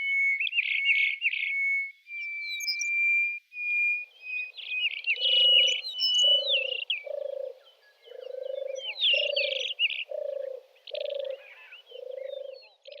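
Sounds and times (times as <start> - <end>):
small birds chirping: 0.0 - 13.0
frog croaking: 5.2 - 12.6.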